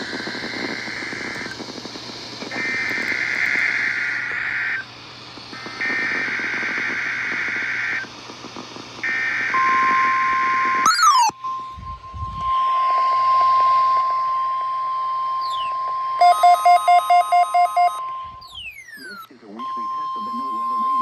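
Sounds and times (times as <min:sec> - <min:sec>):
buzzy warbling data tones: 0:05.6 - 0:11.4, 0:16.2 - 0:18.0
steady beep-like tone: 0:10.9 - 0:14.4, 0:15.6 - 0:21.0.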